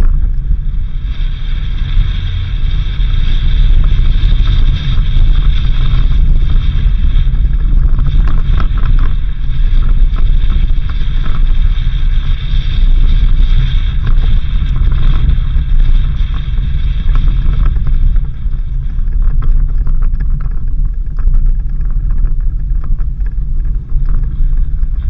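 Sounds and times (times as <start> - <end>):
engine and road rumble: 0.0 - 25.0
wind on microphone: 0.0 - 25.0.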